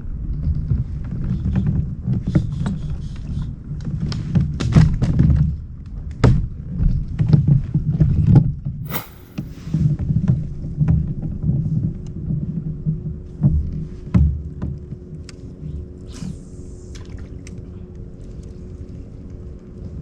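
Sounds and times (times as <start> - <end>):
short hiss: 8.8 - 9.8.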